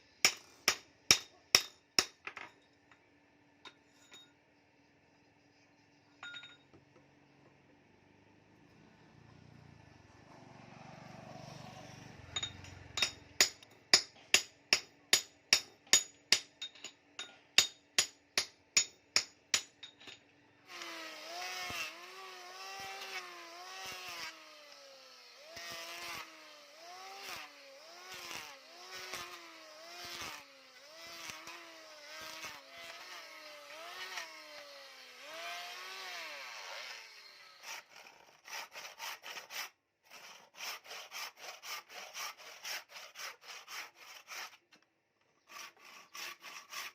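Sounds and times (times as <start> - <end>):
hammer striking steel: 0.2 - 2.2, 12.4 - 20.1.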